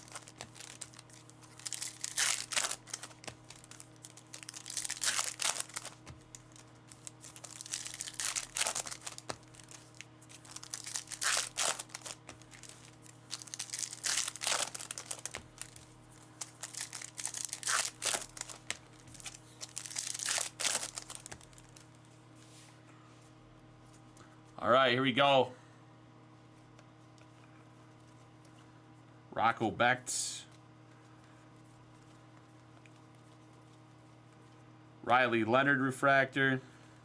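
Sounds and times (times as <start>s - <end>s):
foil wrappers torn and crinkled: 0.0s - 22.0s
low electrical hum: 0.0s - 37.0s.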